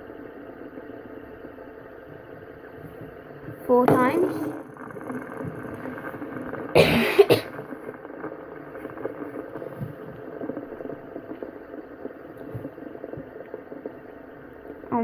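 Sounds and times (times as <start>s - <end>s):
person coughing: 6.8s - 7.6s.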